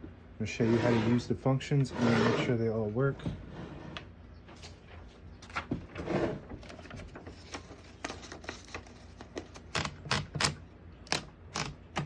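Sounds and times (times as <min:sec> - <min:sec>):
typewriter clicks and clacks: 0:09.7 - 0:12.0.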